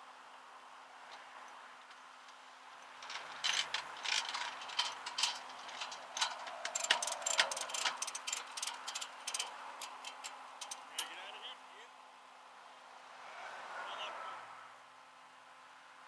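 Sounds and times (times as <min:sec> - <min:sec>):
mechanical clicking and rattling: 0:02.9 - 0:11.1.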